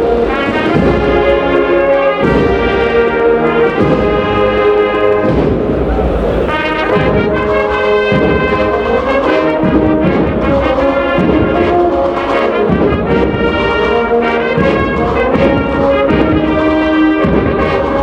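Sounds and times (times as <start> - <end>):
brass band playing slow march: 0.0 - 18.0
low drum strokes: 0.0 - 18.0.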